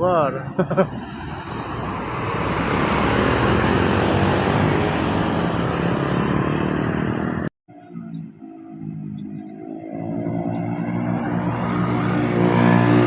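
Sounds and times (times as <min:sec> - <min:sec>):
bus driving past: 0:00.4 - 0:13.0.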